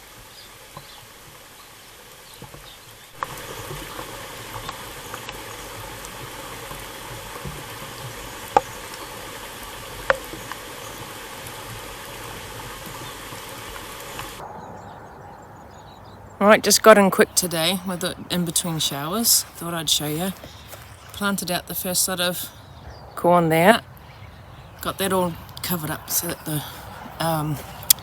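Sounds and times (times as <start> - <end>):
rain pattering: 0.0 - 28.0.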